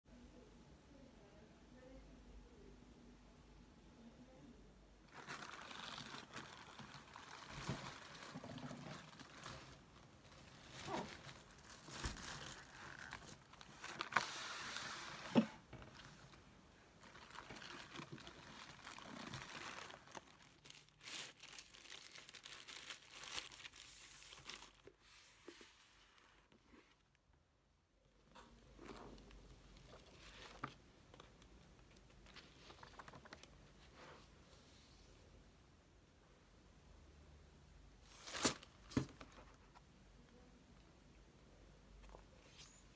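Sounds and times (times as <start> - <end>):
rustling and crinkling: 5.0 - 27.2, 28.2 - 34.9.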